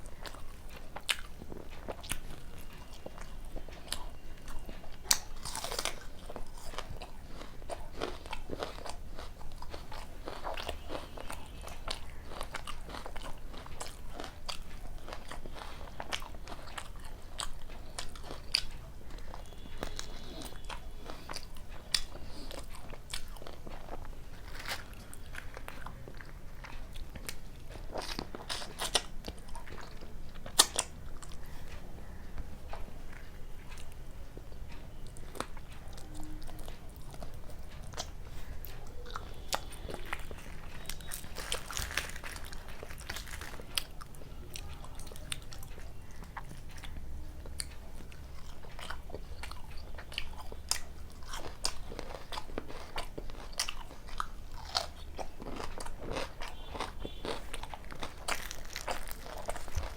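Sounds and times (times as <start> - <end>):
food crunching: 0.0 - 59.9
person chewing: 0.0 - 59.9.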